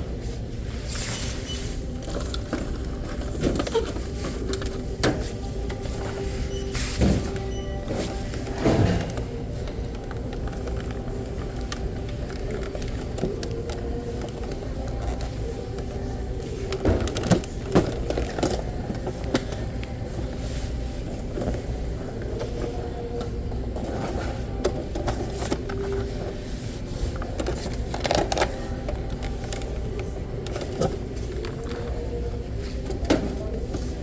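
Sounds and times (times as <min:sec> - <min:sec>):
store low hum: 0:00.0 - 0:34.0.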